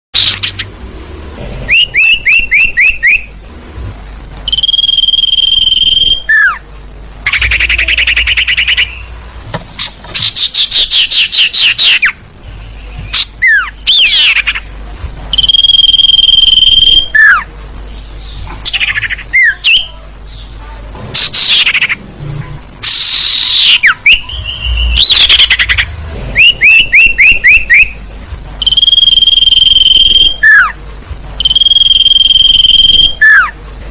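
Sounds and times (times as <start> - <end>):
bird calls with trills and whistles: 1.7 - 3.4, 4.4 - 6.6, 7.2 - 9.2, 9.8 - 14.7, 15.3 - 17.5, 21.2 - 22.0, 22.8 - 30.8, 31.4 - 33.6.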